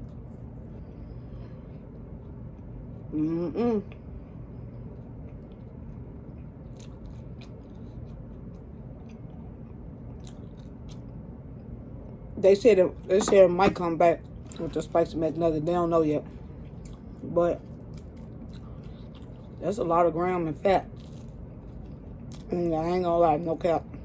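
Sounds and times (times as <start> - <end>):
person humming mm: 3.1 - 4.0
person chewing: 4.8 - 11.1, 16.6 - 19.6, 21.0 - 22.5.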